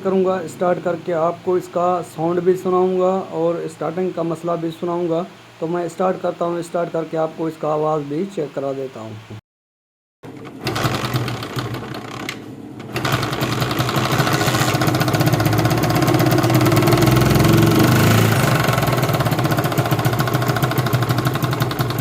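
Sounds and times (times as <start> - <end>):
small engine running roughly: 10.3 - 22.0.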